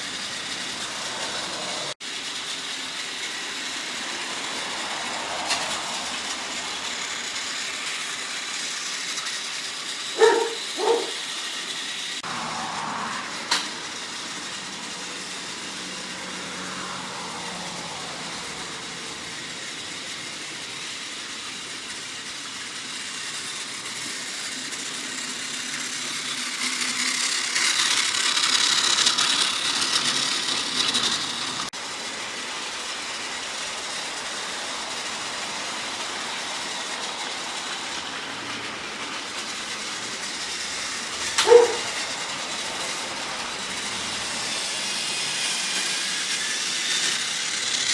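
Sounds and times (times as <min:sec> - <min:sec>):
toy train motor running: 0:00.0 - 0:47.9.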